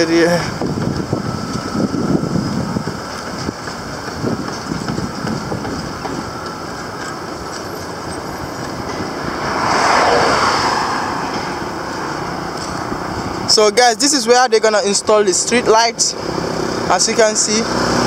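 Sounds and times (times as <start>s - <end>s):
road traffic rumbling: 0.0s - 18.0s
vehicle passing close: 7.3s - 18.0s.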